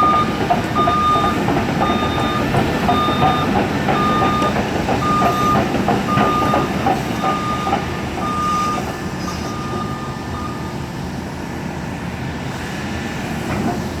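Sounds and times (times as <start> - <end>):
excavator alarm beeping: 0.0 - 11.0
excavator engine running: 0.0 - 14.0.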